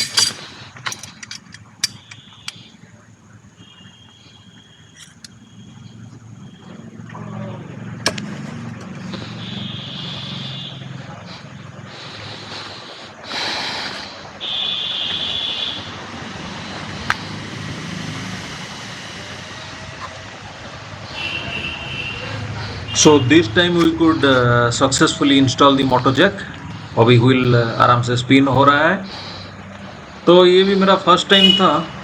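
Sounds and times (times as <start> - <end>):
sharp metal clicks: 0.0 - 2.9, 4.9 - 5.4, 8.0 - 9.0
steady low hum: 0.0 - 14.6, 15.3 - 30.8.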